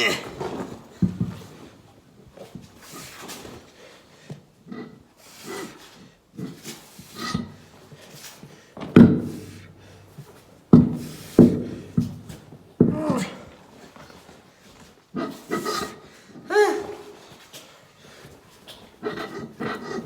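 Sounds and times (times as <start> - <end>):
heavy thumps: 8.8 - 13.4
rubbing and light knocks: 18.3 - 20.0.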